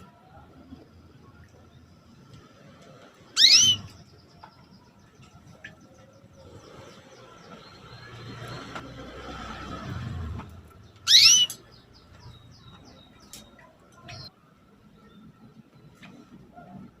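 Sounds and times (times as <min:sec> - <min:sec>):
canary upward-sweeping call: 0:03.3 - 0:03.9, 0:11.0 - 0:11.5
faint bird chirps: 0:10.8 - 0:17.0.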